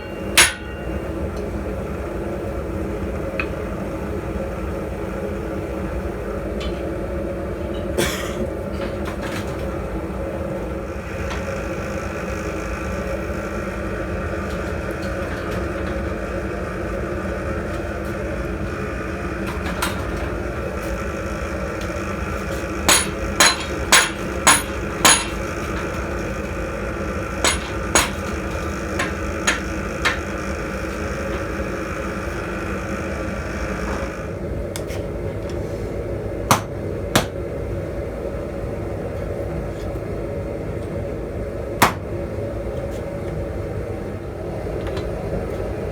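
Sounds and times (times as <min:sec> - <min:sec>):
hammer striking metal: 0:00.0 - 0:01.2, 0:22.8 - 0:26.2, 0:27.4 - 0:30.7
mechanical hum: 0:00.0 - 0:45.9.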